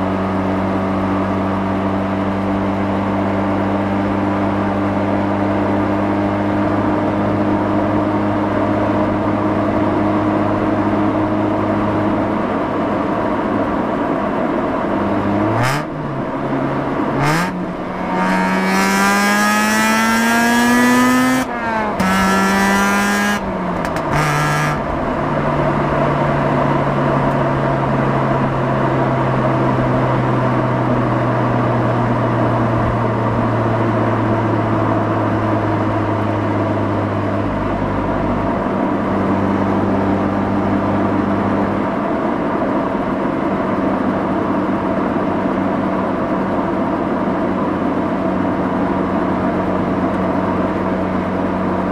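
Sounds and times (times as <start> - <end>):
rotary engine accelerating: 14.7 - 51.9.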